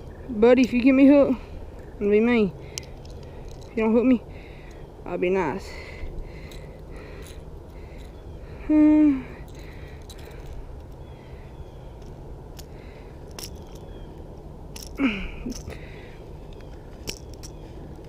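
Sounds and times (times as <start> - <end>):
steady low rumble: 0.0 - 18.0
handling noise: 12.0 - 18.0.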